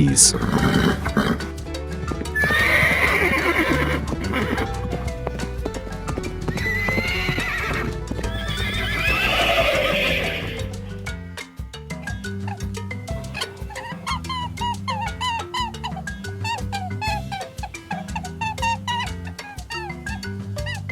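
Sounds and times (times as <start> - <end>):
background music: 0.0 - 20.9
horse whinnying: 0.3 - 10.8.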